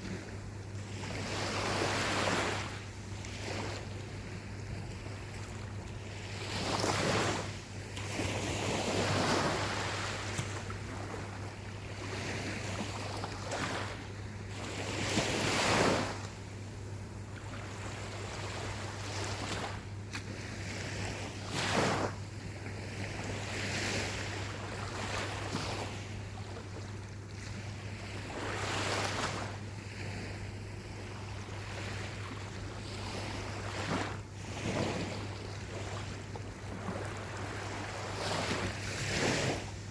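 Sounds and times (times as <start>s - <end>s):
steady low hum: 0.0s - 21.5s
ocean waves washing onto beach: 0.0s - 39.9s.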